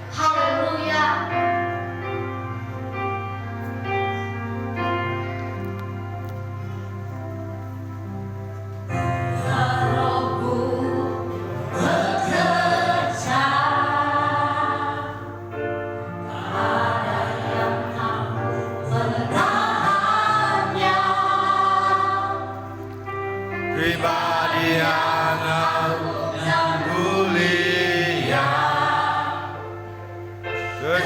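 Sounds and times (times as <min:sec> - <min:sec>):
keyboard chords: 0:00.0 - 0:31.0
group of voices singing: 0:09.3 - 0:15.4, 0:16.0 - 0:22.6, 0:23.7 - 0:29.8, 0:30.6 - 0:31.0.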